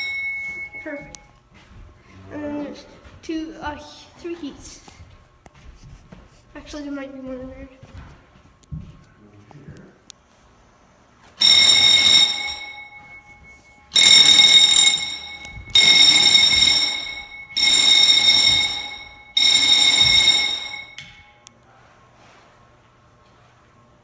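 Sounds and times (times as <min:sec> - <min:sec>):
fire alarm horn blasts: 0:00.0 - 0:01.3, 0:11.4 - 0:21.5.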